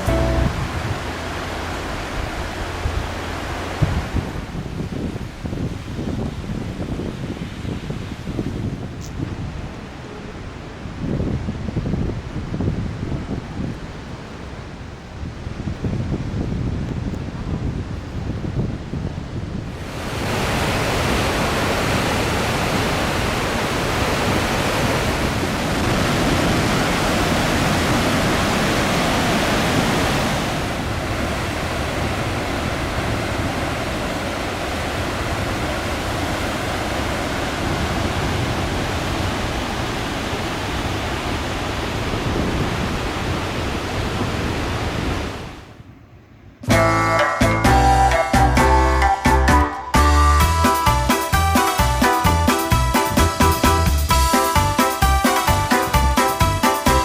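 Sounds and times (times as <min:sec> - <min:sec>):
water rushing through spillway: 0:00.0 - 0:09.9, 0:19.7 - 0:45.6.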